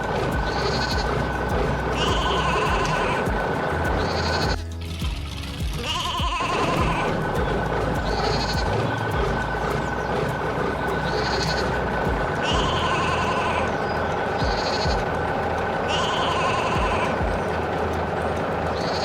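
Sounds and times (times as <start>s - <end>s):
steady low hum: 0.0s - 19.0s
animal bleating: 5.8s - 7.2s, 12.4s - 13.8s, 14.5s - 15.0s, 15.9s - 17.2s.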